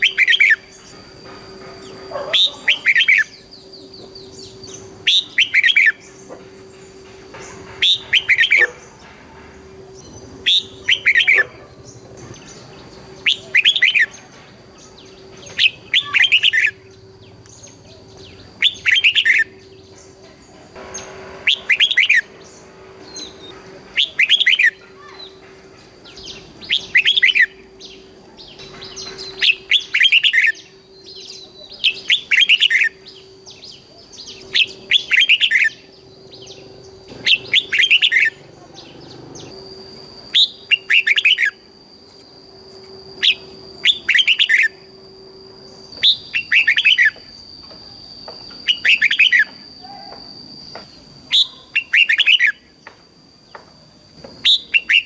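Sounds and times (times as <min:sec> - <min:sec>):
bird singing warbled phrase: 0:00.0 - 0:01.0, 0:01.8 - 0:06.4, 0:09.9 - 0:41.6, 0:43.2 - 0:44.9, 0:45.7 - 0:47.2, 0:51.3 - 0:52.7
faint whine and hum: 0:00.0 - 0:55.0.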